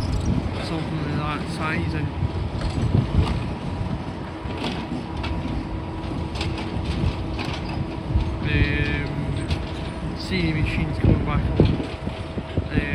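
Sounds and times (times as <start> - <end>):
demolition machinery rumbling: 0.0 - 12.9
clanks of metal and rubble: 6.2 - 10.0.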